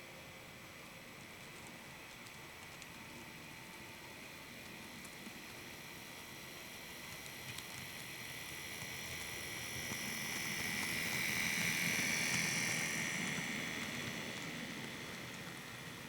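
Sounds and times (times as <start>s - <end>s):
model train motor whine: 4.4s - 16.0s.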